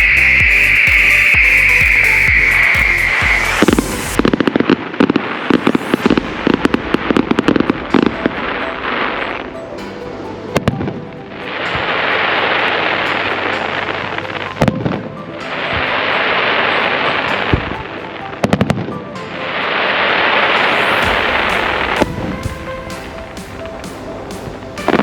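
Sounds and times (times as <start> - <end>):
fireworks crackling hiss: 0.0 - 9.5, 19.7 - 25.0
fireworks cracks and bangs: 3.1 - 9.5, 20.5 - 25.0.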